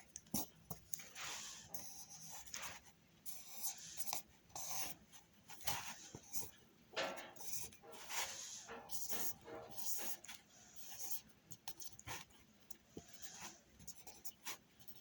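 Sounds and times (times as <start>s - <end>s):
drawing tool scratching paper: 7.4s - 12.2s.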